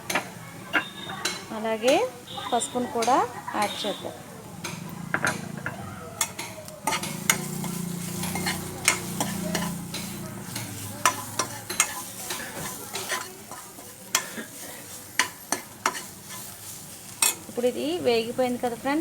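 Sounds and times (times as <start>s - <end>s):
frying sizzle: 0.0s - 19.0s
spoon clicking against pan: 4.6s - 14.4s, 15.2s - 16.5s, 17.1s - 17.5s.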